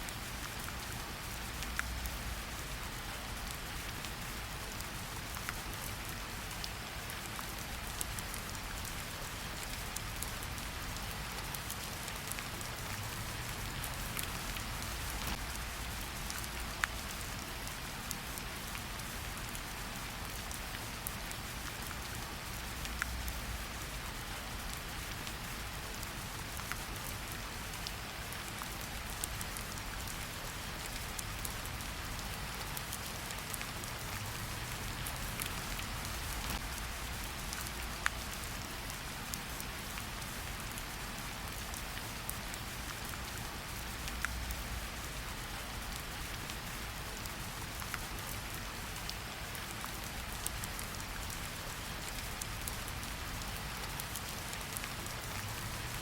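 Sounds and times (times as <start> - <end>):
steady rain hiss: 0.0 - 56.0
heavy raindrop ticks: 11.5 - 17.5, 30.8 - 38.7.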